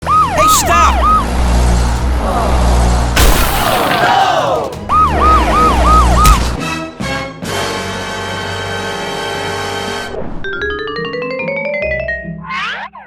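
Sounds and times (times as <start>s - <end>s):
emergency siren whooping: 0.0s - 3.1s, 4.1s - 6.6s
crash-like burst with swooping tones: 3.2s - 6.6s.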